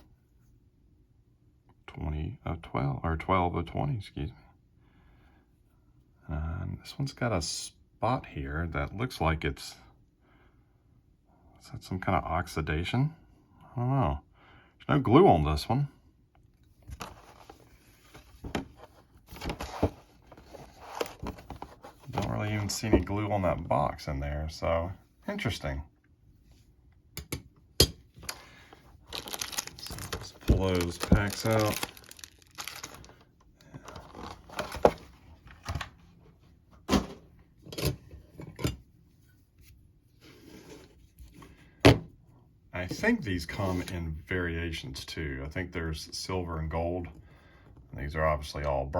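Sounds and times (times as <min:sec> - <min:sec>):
packaging rustling: 0:28.2 - 0:35.8.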